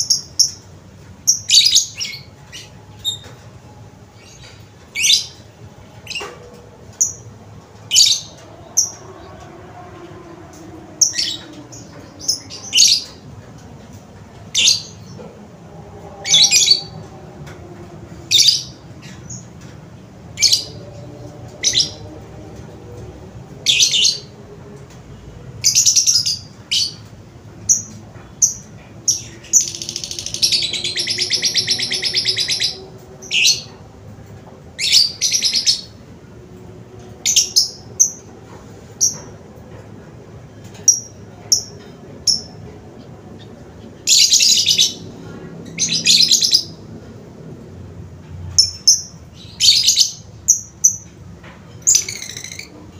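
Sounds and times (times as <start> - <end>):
bird chirping: 27.7 - 33.8.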